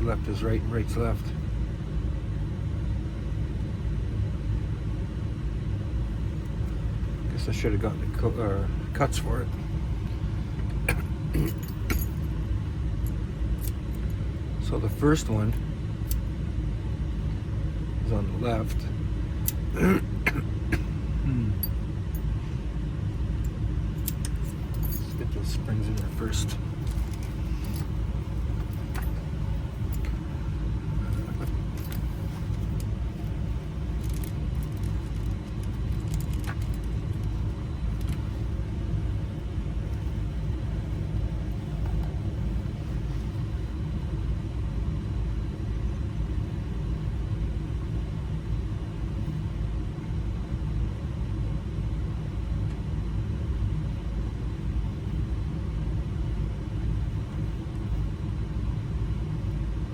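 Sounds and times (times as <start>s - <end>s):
vehicle engine idling: 4.9s - 16.3s, 20.7s - 43.8s
small metallic clicks: 34.0s - 37.4s.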